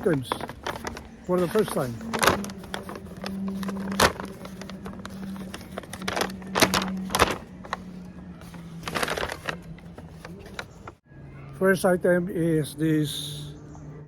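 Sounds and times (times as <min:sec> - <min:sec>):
packages knocking and rustling: 0:00.0 - 0:11.0.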